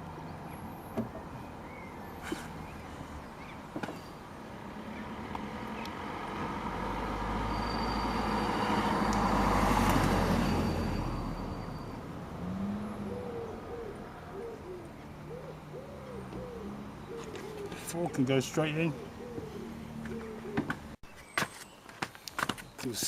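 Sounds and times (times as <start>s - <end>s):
road vehicle passing: 0.0s - 21.0s
pigeon cooing: 12.5s - 21.0s.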